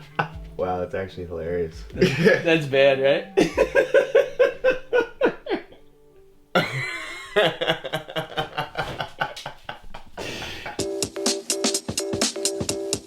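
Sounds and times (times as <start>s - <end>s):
background music with quick beat: 0.0s - 5.0s, 10.8s - 13.0s
laughter: 2.0s - 2.4s, 3.4s - 5.9s, 6.6s - 10.8s.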